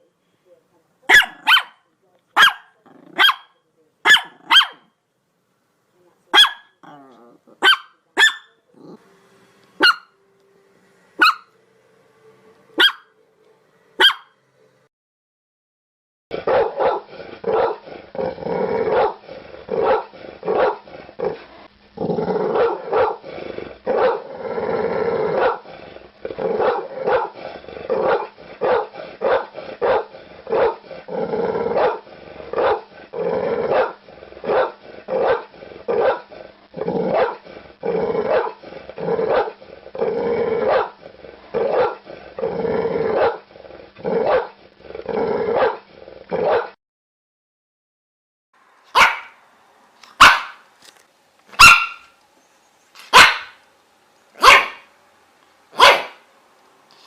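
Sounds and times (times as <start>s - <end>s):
dog barking loudly: 1.1s - 1.8s, 2.4s - 4.9s, 6.3s - 7.0s, 7.6s - 8.6s, 9.8s - 10.1s, 11.2s - 11.5s, 12.8s - 13.1s, 14.0s - 14.4s, 16.3s - 17.8s, 18.9s - 19.2s, 19.8s - 20.8s, 22.5s - 23.2s, 23.9s - 24.2s, 25.4s - 25.6s, 26.6s - 27.4s, 28.0s - 30.8s, 31.8s - 32.0s, 32.6s - 32.9s, 33.7s - 36.3s, 37.1s - 37.4s, 38.3s - 38.6s, 39.3s - 39.6s, 40.6s - 41.0s, 41.6s - 42.0s, 44.2s - 44.5s, 45.6s - 45.8s, 46.4s - 46.8s, 48.9s - 49.4s, 50.1s - 50.6s, 51.5s - 52.2s, 53.1s - 53.6s, 54.4s - 54.9s, 55.7s - 56.3s.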